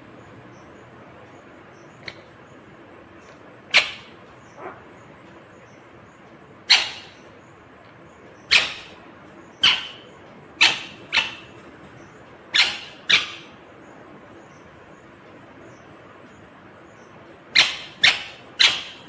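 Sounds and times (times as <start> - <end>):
parakeet squawking: 3.7 - 4.9, 6.7 - 7.2, 8.5 - 9.0, 9.6 - 11.6, 12.5 - 13.6, 17.5 - 19.0.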